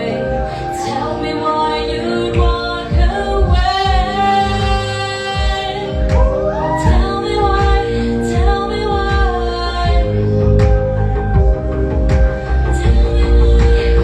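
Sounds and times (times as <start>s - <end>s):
woman singing: 0.0s - 10.8s, 12.7s - 14.0s
kick drum beat: 5.4s - 7.8s, 9.9s - 13.8s.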